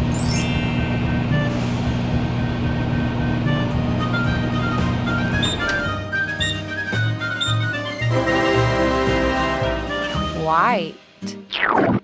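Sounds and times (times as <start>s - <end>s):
cheerful children's instrumental tune: 0.0s - 1.8s, 5.9s - 11.2s.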